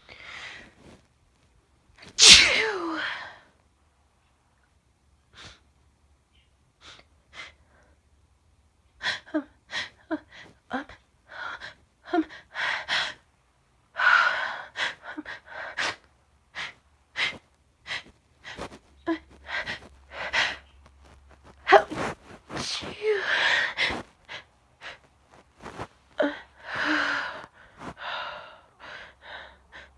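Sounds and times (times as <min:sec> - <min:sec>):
woman sneezing: 0:02.2 - 0:03.3, 0:21.7 - 0:24.0.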